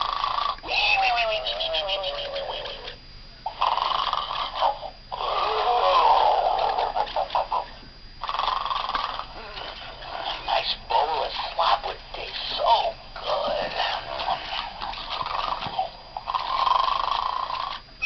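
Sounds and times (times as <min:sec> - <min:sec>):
toy playing recorded snore: 0:00.0 - 0:17.9.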